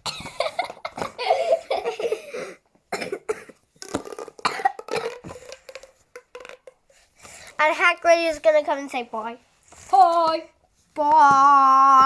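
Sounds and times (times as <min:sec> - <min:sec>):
child coughing and throat-clearing: 0:00.0 - 0:05.6.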